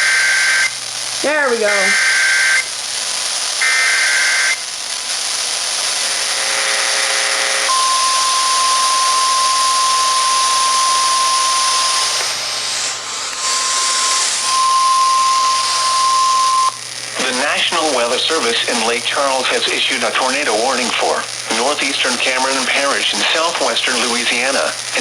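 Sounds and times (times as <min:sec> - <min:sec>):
steady warning alarm tone: 0:00.0 - 0:00.8, 0:01.6 - 0:02.7, 0:03.6 - 0:04.6, 0:07.6 - 0:17.6
radio static: 0:00.0 - 0:07.0, 0:07.6 - 0:25.0
two-pitch data burst: 0:07.7 - 0:24.4.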